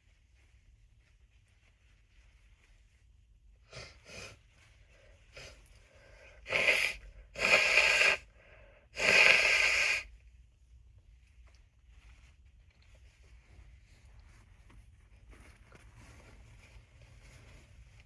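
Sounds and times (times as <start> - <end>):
person blowing nose: 3.6 - 4.5, 5.3 - 5.6, 6.3 - 10.1.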